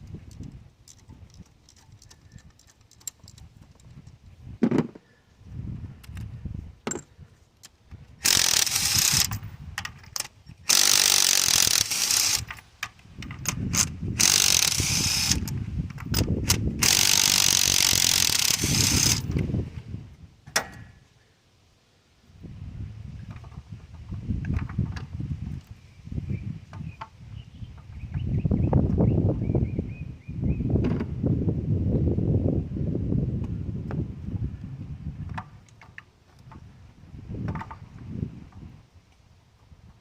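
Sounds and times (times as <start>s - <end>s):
ratchet wrench clicking: 8.2s - 9.4s, 10.2s - 12.6s, 13.4s - 19.4s.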